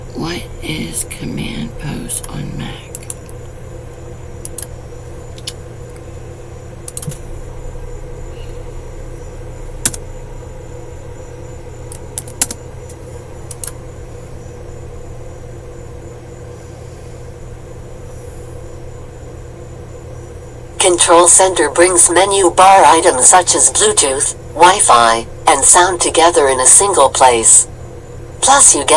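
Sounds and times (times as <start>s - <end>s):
steady low hum: 0.0s - 28.9s
computer keyboard clicks: 2.9s - 3.3s, 4.4s - 4.7s, 6.9s - 7.2s, 9.8s - 10.0s, 11.9s - 13.8s.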